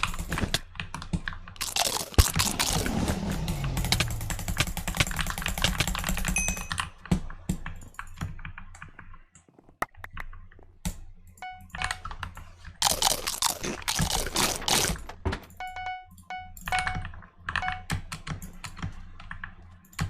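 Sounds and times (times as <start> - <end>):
mechanical keyboard typing: 0.0 - 9.1, 14.0 - 20.0
short pinging tones: 6.4 - 6.9, 11.4 - 12.0, 15.5 - 18.0.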